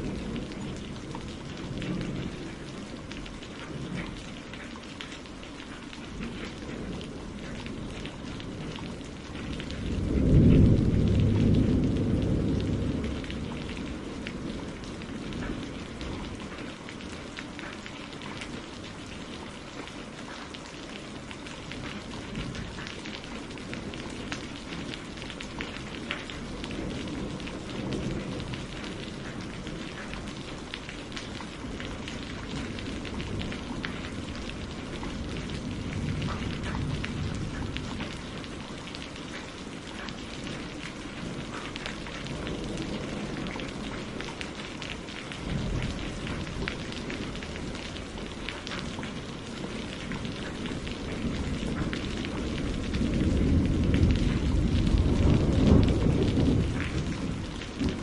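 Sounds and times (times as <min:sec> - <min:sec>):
thunder rumbling: 0:00.0 - 0:04.5, 0:06.2 - 0:16.8, 0:21.2 - 0:58.0
rain pattering: 0:00.0 - 0:58.0.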